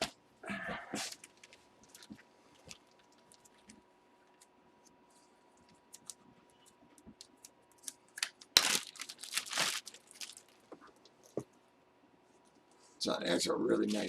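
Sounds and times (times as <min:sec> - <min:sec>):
plastic packaging clicks and rustles: 0:01.1 - 0:04.5, 0:05.7 - 0:11.4
plastic crinkling and tearing: 0:07.2 - 0:10.8.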